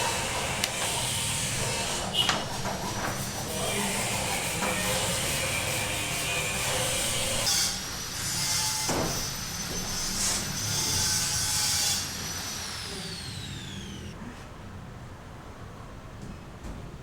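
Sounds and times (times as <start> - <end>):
hissing cutting: 0.0 - 14.1
power tool motor whining: 12.2 - 14.2.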